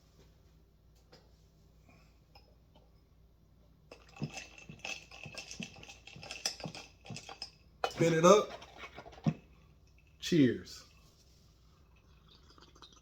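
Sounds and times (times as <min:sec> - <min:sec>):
glassware clinking and rattling: 0:03.9 - 0:10.2.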